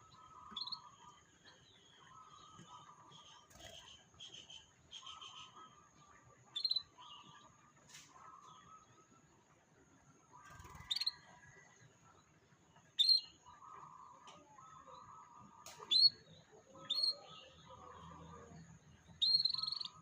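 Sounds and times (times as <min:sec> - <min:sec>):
canary chirping: 0:00.0 - 0:05.8, 0:06.5 - 0:07.5, 0:10.5 - 0:11.2, 0:12.9 - 0:13.6, 0:15.7 - 0:20.0.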